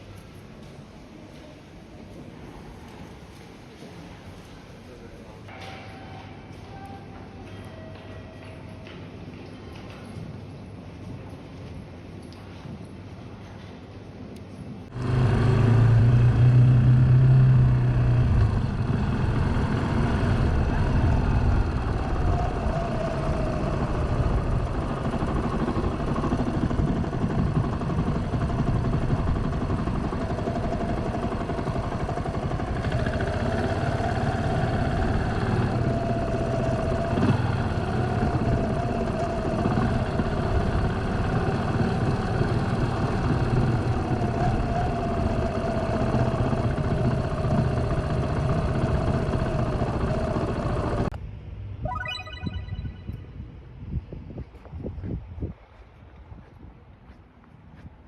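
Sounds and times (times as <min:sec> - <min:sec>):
single-cylinder engine running: 0:14.9 - 0:51.2.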